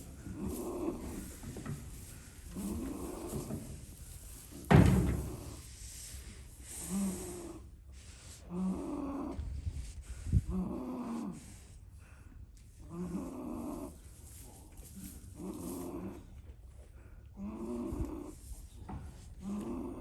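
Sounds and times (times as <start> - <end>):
goat snoring: 0.0 - 5.6, 6.6 - 7.7, 8.4 - 11.6, 12.8 - 16.5, 17.3 - 20.0
loud thump: 4.7 - 5.6.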